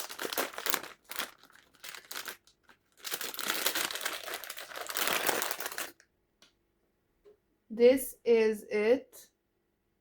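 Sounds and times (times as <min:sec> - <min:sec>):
plastic packaging crinkling: 0:00.0 - 0:06.0.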